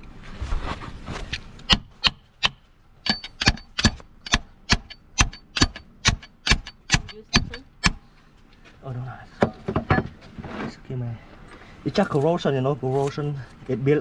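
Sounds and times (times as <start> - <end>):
metal tool knocking on metal: 1.8 - 8.0.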